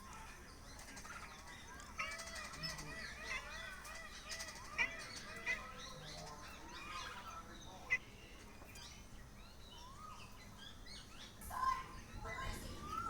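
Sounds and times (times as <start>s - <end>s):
songbirds chirping: 0.0s - 13.0s.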